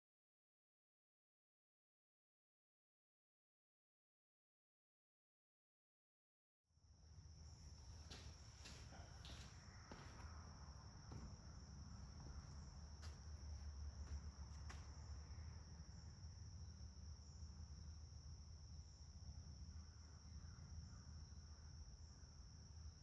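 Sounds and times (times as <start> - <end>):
faint high-pitched whine: 6.8 - 23.0.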